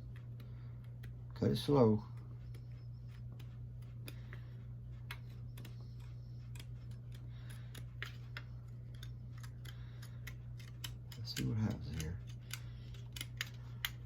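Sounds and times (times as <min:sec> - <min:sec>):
steady low hum: 0:00.0 - 0:14.0
scissors snipping sheet metal: 0:08.9 - 0:14.0.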